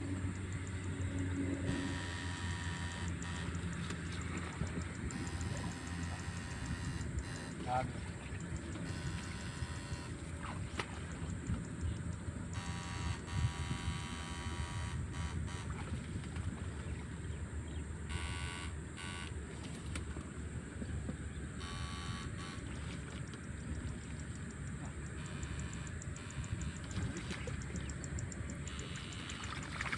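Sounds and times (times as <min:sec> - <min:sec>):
steady low rumble: 0:00.0 - 0:14.2
electrofishing shocker buzzing: 0:00.0 - 0:17.0, 0:18.0 - 0:20.0, 0:21.5 - 0:29.9.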